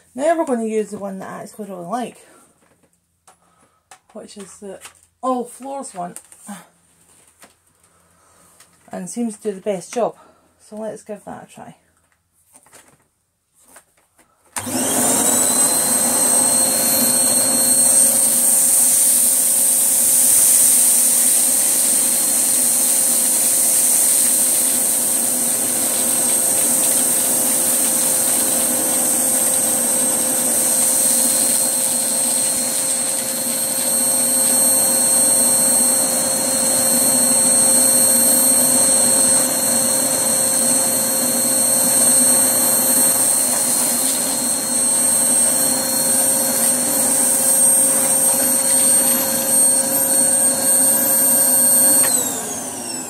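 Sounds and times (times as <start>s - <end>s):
vacuum cleaner motor whine: 14.6s - 53.0s.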